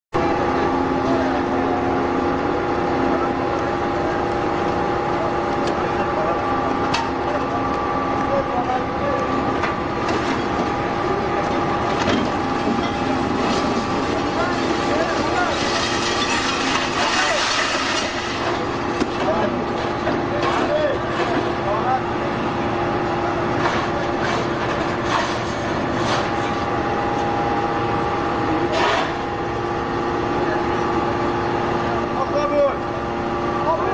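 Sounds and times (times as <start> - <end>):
hydraulic baler humming: 0.2 - 33.9.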